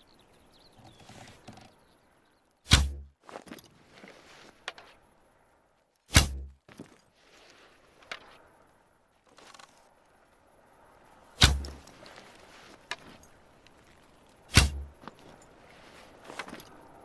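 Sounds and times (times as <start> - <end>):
clicks and handling noises: 0.8 - 1.9, 3.3 - 5.0, 6.0 - 8.5, 9.2 - 10.0, 11.4 - 17.0
arrow shot thwack: 2.7 - 3.1, 6.1 - 6.5, 11.4 - 11.8, 14.5 - 15.0.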